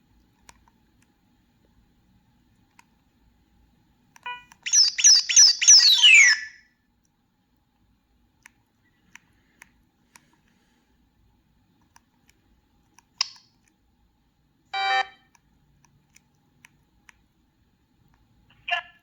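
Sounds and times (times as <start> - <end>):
phone ringtone snippets: 14.8 - 15.2.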